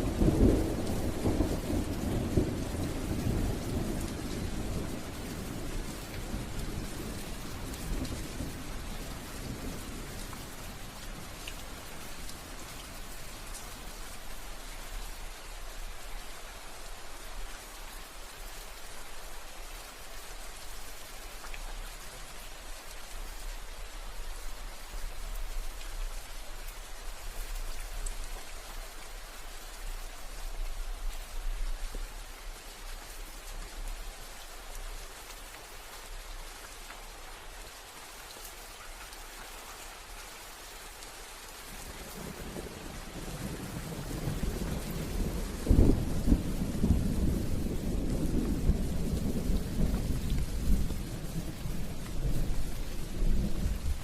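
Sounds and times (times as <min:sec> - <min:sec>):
steady rain falling: 0:00.0 - 0:54.0
raindrop ticks: 0:08.9 - 0:13.7, 0:21.4 - 0:21.9, 0:41.8 - 0:54.0.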